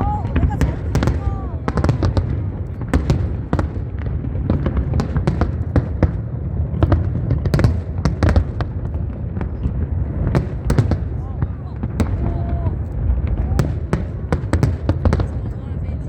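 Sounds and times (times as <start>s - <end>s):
fireworks bangs and crackles: 0.0s - 16.0s.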